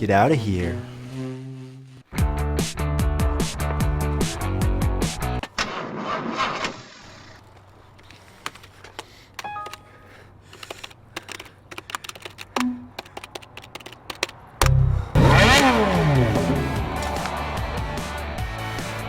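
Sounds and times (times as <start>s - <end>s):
keyboard keys clicking: 9.4s - 9.9s, 10.5s - 14.4s.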